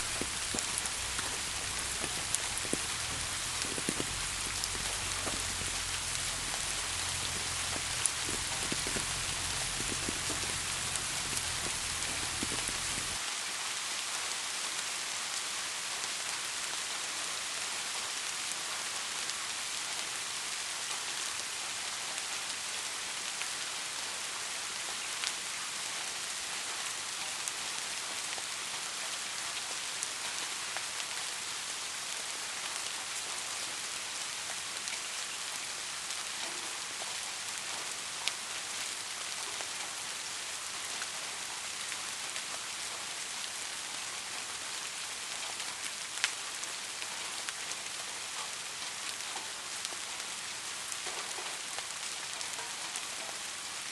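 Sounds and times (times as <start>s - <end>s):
steady rain hiss: 0.0s - 53.9s
drops ticking on a surface: 7.4s - 13.2s.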